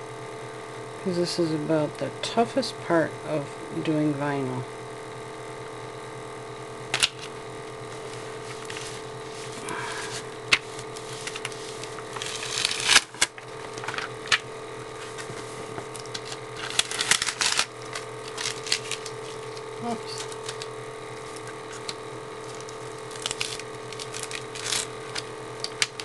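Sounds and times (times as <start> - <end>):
steady background hum: 0.0 - 26.0
vinyl sheet clicks and crinkles: 6.9 - 7.4, 8.0 - 9.5, 10.1 - 26.0.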